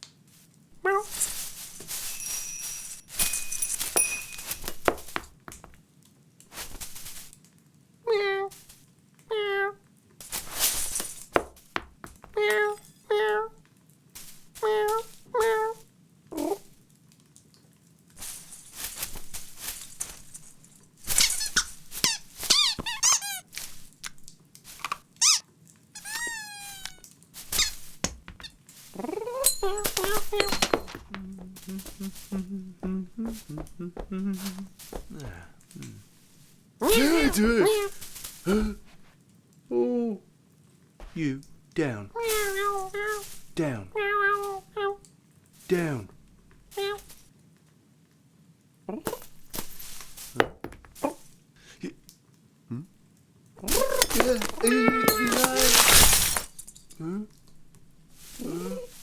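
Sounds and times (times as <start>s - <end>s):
cartoon rustling and scrabbling: 0.8s - 5.8s, 6.5s - 7.3s, 10.2s - 13.5s, 14.2s - 16.7s, 18.2s - 25.4s, 26.0s - 39.1s, 41.0s - 45.0s, 45.7s - 47.3s, 53.6s - 59.0s
clinks and knocks: 1.2s - 5.7s, 27.7s - 32.1s, 53.7s - 57.7s
bright ringing tones: 2.0s - 4.7s
short high squeaks: 21.1s - 23.6s, 25.2s - 25.4s, 26.0s - 30.6s.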